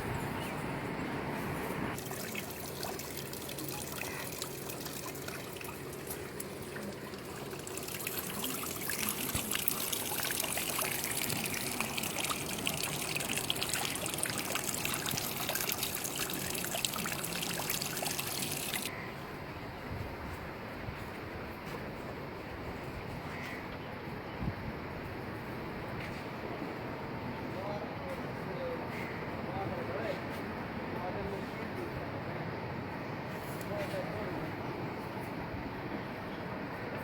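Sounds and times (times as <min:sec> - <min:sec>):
water trickling and splashing: 0:01.9 - 0:18.9
hissing water spray: 0:02.0 - 0:18.9.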